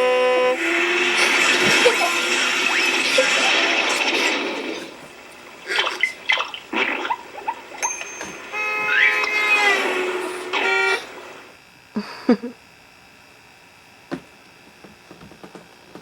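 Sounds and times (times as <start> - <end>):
car horn: 0.0 - 0.8, 8.5 - 9.5.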